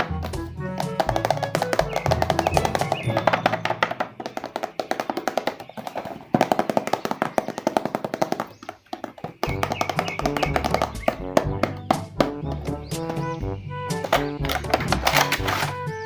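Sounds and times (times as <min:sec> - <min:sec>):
bouncy tune of rapid notes: 0:00.0 - 0:04.3, 0:09.5 - 0:16.0
bass line: 0:10.5 - 0:15.1.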